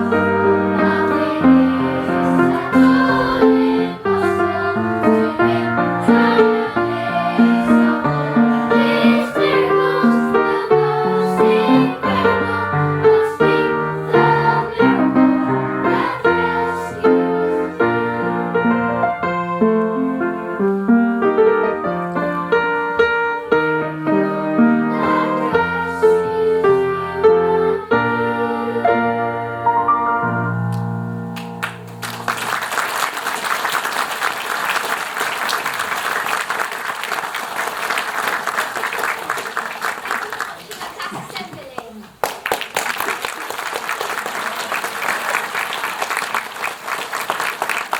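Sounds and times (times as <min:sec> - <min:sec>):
piano melody: 0:00.0 - 0:32.7
audience applause: 0:31.4 - 0:47.9.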